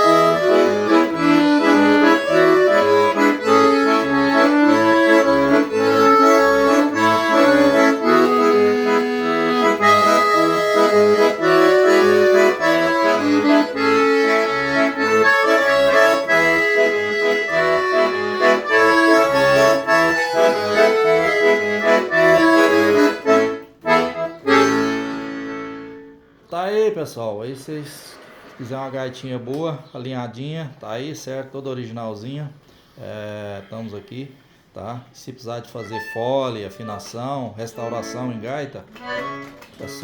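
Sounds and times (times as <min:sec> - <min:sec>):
accordion playing melody: 0:00.0 - 0:26.4, 0:35.7 - 0:40.0.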